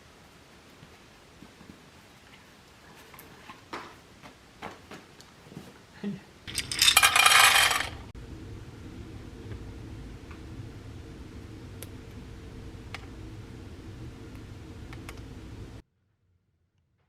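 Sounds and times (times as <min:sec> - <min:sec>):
small hard objects rattling: 0:06.5 - 0:08.1.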